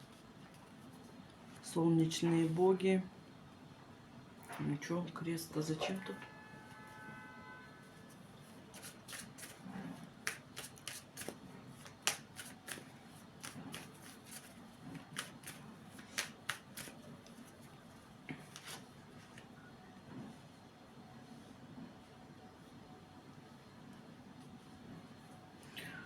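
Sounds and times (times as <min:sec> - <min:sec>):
cards being shuffled: 0:08.7 - 0:17.8, 0:18.4 - 0:19.5.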